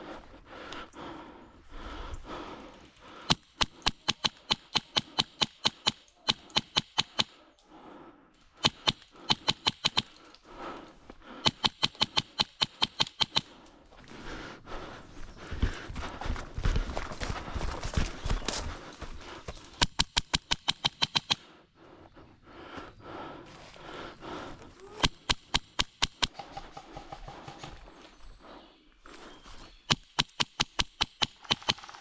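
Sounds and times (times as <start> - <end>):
airsoft gun firing bursts: 3.3 - 7.3, 8.6 - 10.2, 11.4 - 13.5, 19.8 - 21.4, 29.9 - 32.0.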